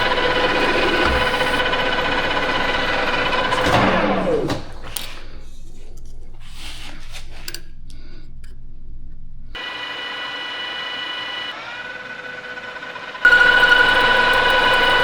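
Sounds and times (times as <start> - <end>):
high motor whine: 0.0 - 5.0, 9.6 - 15.0
cutting tool scraping metal: 0.0 - 5.2, 13.2 - 15.0
lathe motor hum: 0.0 - 5.4, 9.6 - 15.0.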